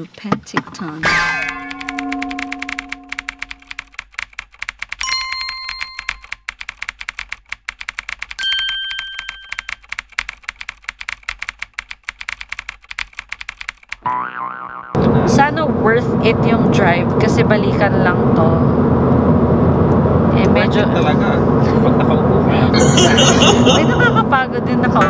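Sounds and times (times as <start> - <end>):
bell-like ding: 1.0 - 3.8, 5.0 - 6.3, 8.4 - 9.7
typing clicks: 1.8 - 14.0.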